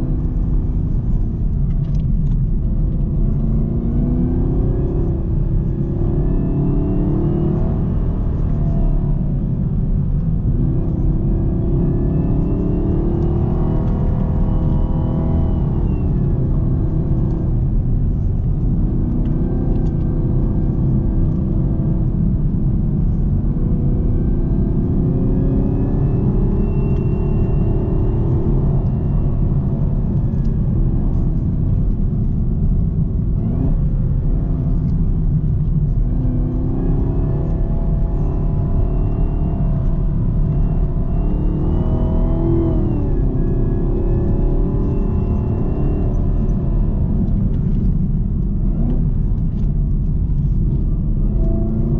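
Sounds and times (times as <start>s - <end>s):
car engine exhaust rumble: 0.0s - 51.9s
supercharger whine: 0.0s - 51.9s.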